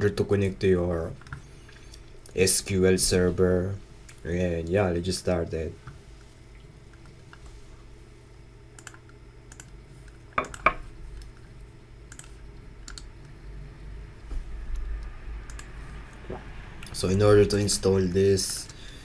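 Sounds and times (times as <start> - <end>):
low steady hum: 0.0 - 19.0
computer keyboard and mouse clicks: 8.8 - 9.8, 10.4 - 11.4, 12.1 - 13.1, 14.8 - 15.7.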